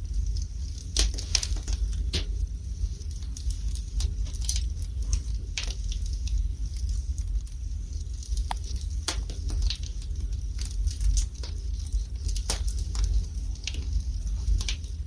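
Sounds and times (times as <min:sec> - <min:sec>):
fire crackling and popping: 0:00.0 - 0:15.0
low fire rumble: 0:00.0 - 0:15.0.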